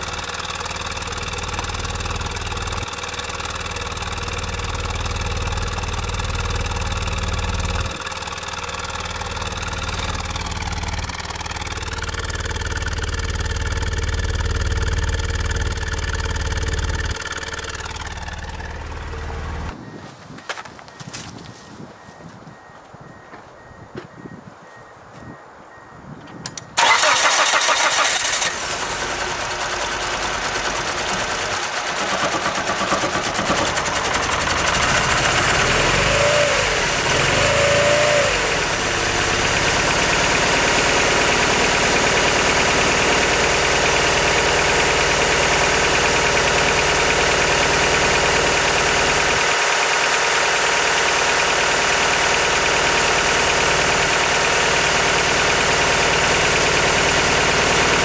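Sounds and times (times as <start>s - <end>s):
car engine cranking and starting: 0.0s - 19.8s, 26.6s - 58.0s
engine running with misfire: 0.0s - 19.8s, 26.8s - 58.0s.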